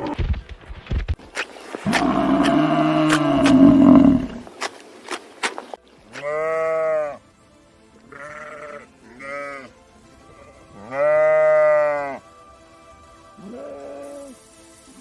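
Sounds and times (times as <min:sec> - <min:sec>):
sheep bleating: 0:01.8 - 0:04.4, 0:06.1 - 0:07.2, 0:08.1 - 0:09.7, 0:10.3 - 0:12.2, 0:13.4 - 0:14.3.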